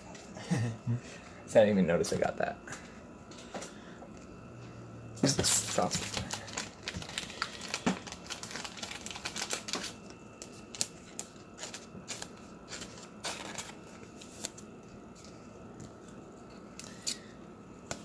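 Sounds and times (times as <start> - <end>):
cards rustling: 5.2 - 17.2.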